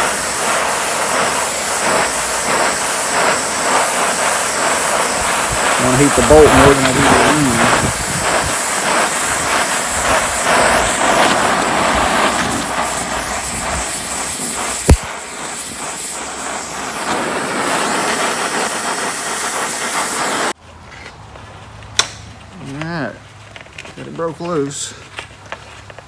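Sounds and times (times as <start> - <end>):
gas torch flame hissing: 0.0 - 20.6.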